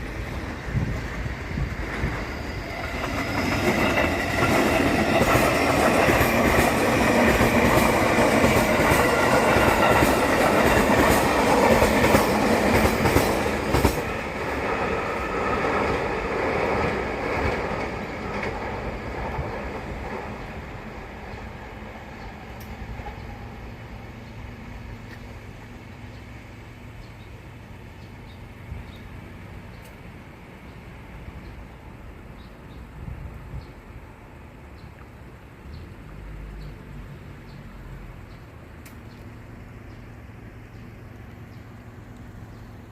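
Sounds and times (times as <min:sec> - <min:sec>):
train rumble: 0:00.0 - 0:42.9
wheels clicking over rail joints: 0:00.8 - 0:21.5.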